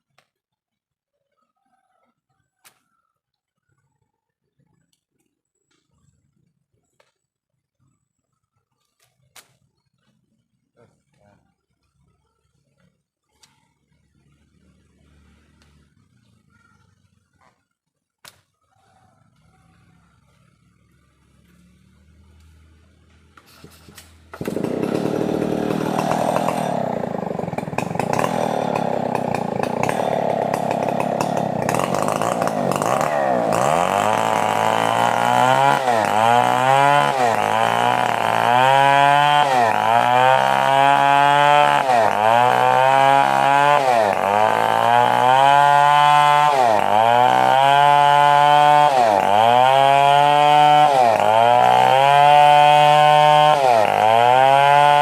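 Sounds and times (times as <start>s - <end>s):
chainsaw running: 23.6s - 55.0s.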